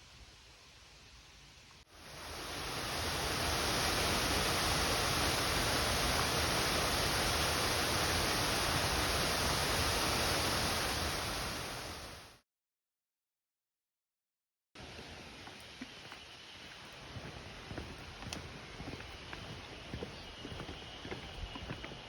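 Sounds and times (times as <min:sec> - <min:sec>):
rushing water: 0:01.8 - 0:12.4.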